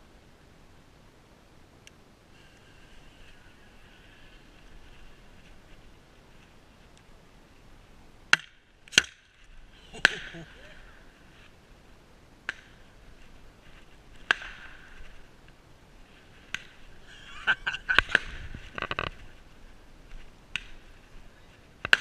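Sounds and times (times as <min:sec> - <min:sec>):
sharp cracks with ringing echo: 0:10.0 - 0:10.5.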